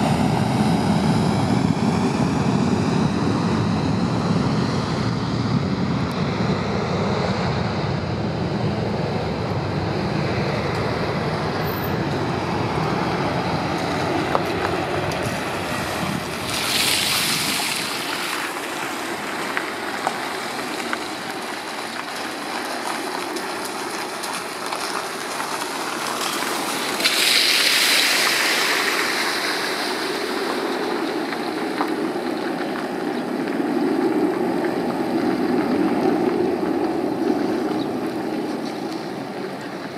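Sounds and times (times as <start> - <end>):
jet engines rumbling: 0.0 - 39.9
steady rushing noise: 0.0 - 39.9
surges of hiss: 26.8 - 30.5.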